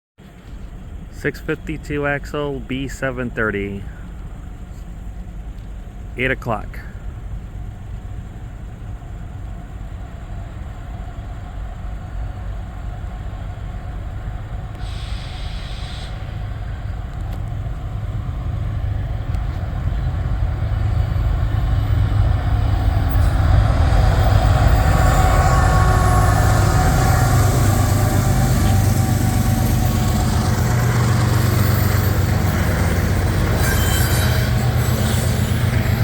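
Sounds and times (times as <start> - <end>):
diesel locomotive rumble: 0.2 - 36.0
brief hiss: 14.8 - 16.6.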